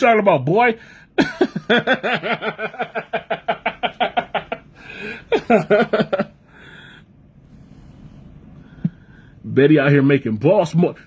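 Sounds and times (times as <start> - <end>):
man laughing hard: 1.2 - 6.4.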